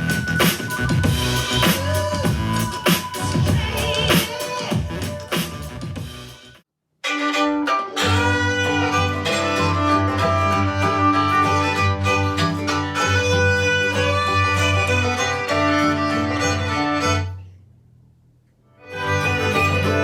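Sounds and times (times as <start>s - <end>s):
music on portable speaker: 0.0s - 6.6s
steady bass: 0.0s - 6.6s
violin and strings: 7.0s - 17.4s, 18.8s - 20.0s.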